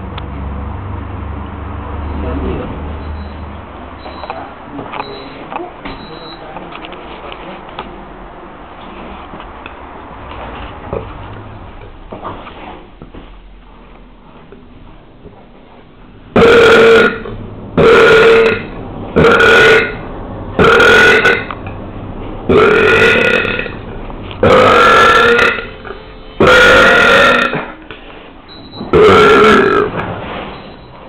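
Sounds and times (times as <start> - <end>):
person burping loudly: 16.4 - 20.0, 20.6 - 21.5, 22.5 - 23.8, 24.4 - 27.7, 29.0 - 30.0.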